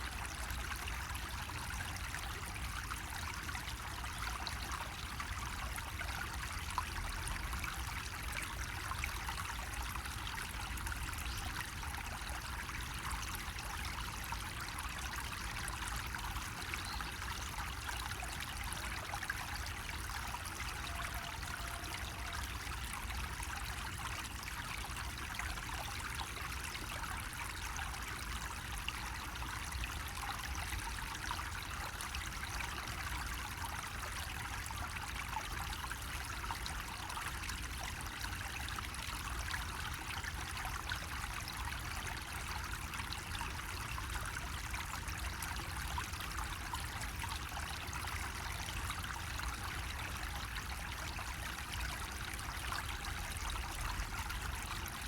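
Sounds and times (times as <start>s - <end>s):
water trickling from a spout: 0.0s - 55.0s.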